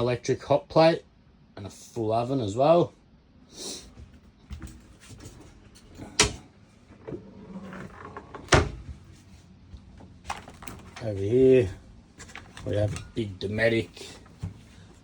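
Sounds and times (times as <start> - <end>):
light clicks and handling noise: 9.7 - 11.3, 12.1 - 14.7.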